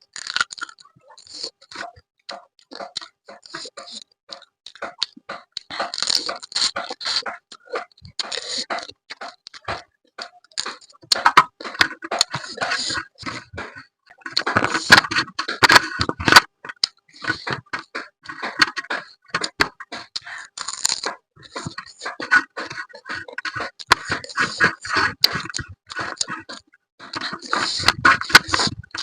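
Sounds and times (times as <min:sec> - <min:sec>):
crab shell cracking: 0:00.0 - 0:01.5, 0:04.4 - 0:13.5, 0:20.5 - 0:21.7
wet chewing and slurping: 0:00.0 - 0:29.0.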